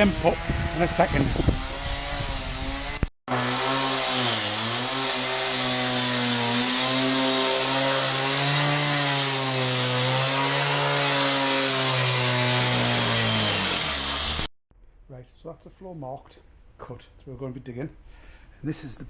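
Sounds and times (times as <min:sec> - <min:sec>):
disc cutter cutting concrete: 0:00.0 - 0:14.5.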